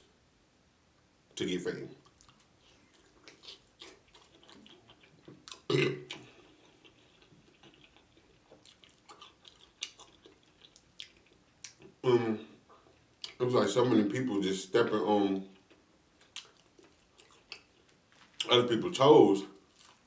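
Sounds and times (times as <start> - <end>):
chewing crunchy food: 2.0 - 12.0, 15.4 - 18.5, 19.5 - 20.0
person burping: 5.6 - 6.4, 12.0 - 12.5.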